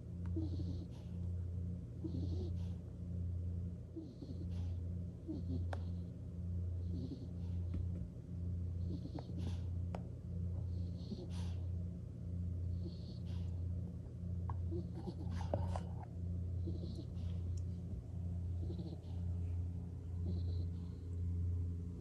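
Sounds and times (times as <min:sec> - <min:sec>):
steady low hum: 0:00.0 - 0:22.0
skunk snoring: 0:00.2 - 0:01.3, 0:02.0 - 0:02.9, 0:03.9 - 0:07.9, 0:08.7 - 0:09.9, 0:10.6 - 0:11.8, 0:12.6 - 0:13.8, 0:14.5 - 0:17.6, 0:18.3 - 0:21.2.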